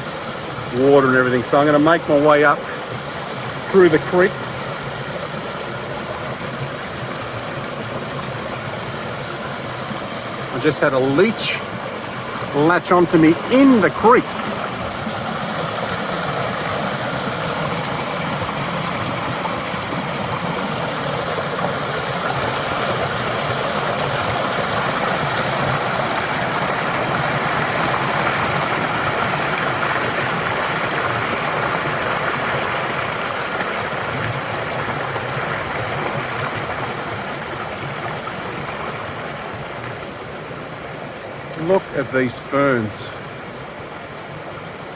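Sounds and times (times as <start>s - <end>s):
creek water rushing over rocks: 0.0s - 44.9s.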